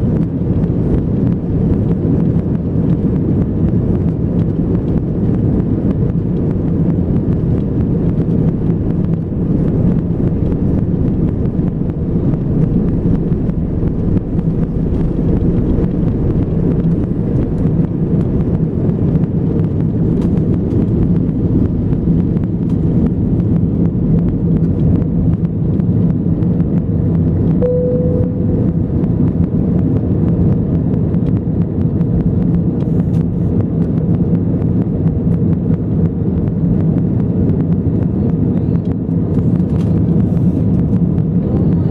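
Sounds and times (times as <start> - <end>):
jet engines rumbling: 0.0 - 41.9
brief steady tone: 27.6 - 29.0.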